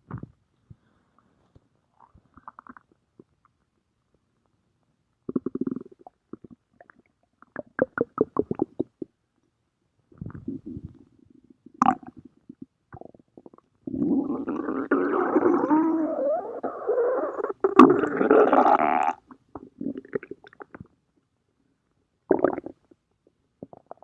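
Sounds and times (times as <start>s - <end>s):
stomach growling: 2.0s - 3.4s, 5.3s - 9.1s, 10.2s - 11.1s, 11.8s - 20.9s.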